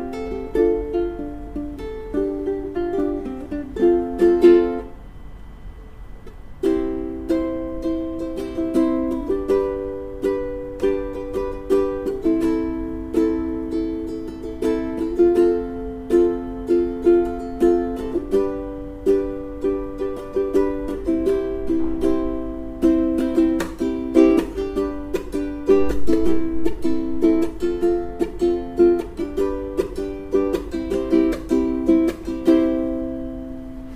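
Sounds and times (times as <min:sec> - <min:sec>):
ukulele strumming chords: 0:00.0 - 0:05.2, 0:06.2 - 0:33.9.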